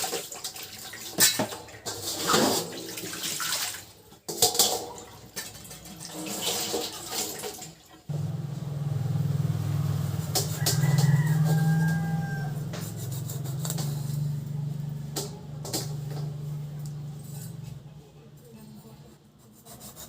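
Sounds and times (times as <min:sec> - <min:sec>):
running water splashing: 0:00.0 - 0:08.1
steady low hum: 0:08.1 - 0:10.7.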